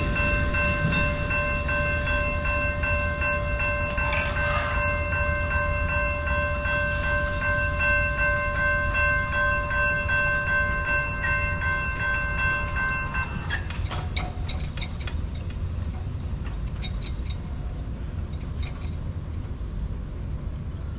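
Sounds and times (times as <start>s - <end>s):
wheels clicking over rail joints: 0.0s - 20.6s
train rumbling: 0.0s - 20.9s.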